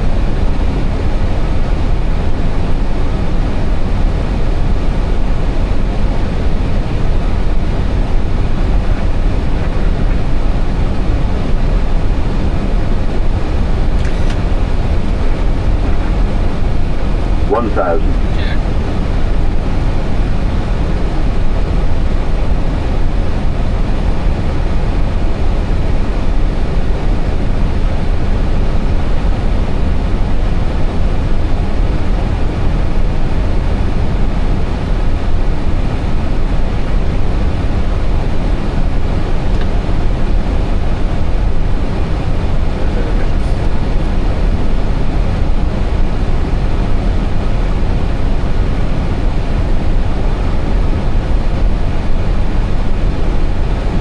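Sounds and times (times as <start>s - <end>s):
rush of air in cockpit: 0.0s - 54.0s.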